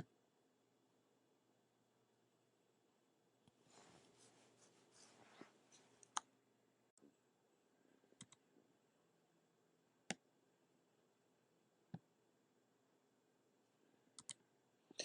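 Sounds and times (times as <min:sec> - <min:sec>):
soft rustle: 0:03.6 - 0:06.0
computer mouse clicks: 0:08.2 - 0:08.4, 0:14.2 - 0:14.4.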